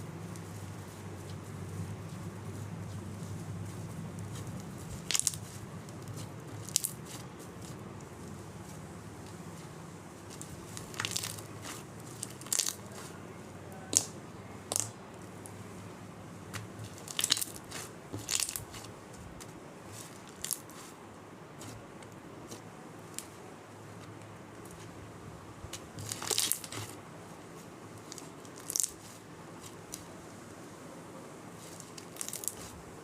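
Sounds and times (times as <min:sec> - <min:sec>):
slime squished by hand: 0:02.9 - 0:09.7, 0:10.3 - 0:13.2, 0:13.8 - 0:15.0, 0:16.5 - 0:21.0, 0:25.7 - 0:27.0, 0:28.0 - 0:30.1, 0:31.6 - 0:32.8.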